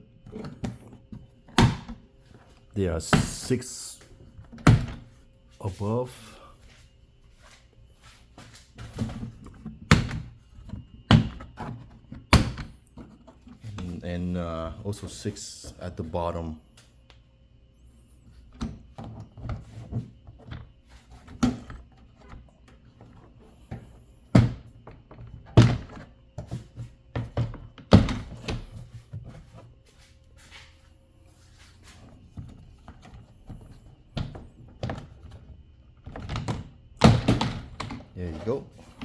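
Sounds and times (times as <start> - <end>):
plastic cover knocking and clattering: 36.1 - 38.1.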